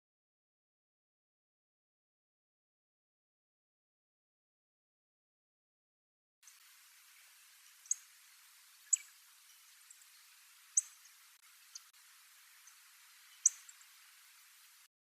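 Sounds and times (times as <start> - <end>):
faint steady hiss: 6.4 - 14.9
bird high tik calls: 6.5 - 14.9.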